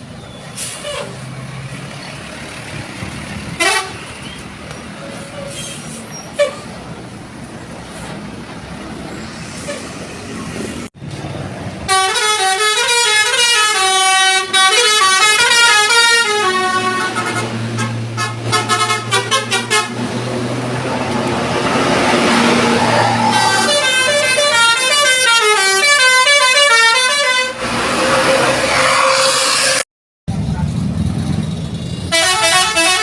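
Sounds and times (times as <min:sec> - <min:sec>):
bus passing: 0:00.0 - 0:33.0
traffic noise: 0:00.0 - 0:33.0
bus musical horn playing a tune: 0:03.6 - 0:04.1, 0:11.9 - 0:20.1, 0:23.2 - 0:27.7, 0:32.1 - 0:33.0.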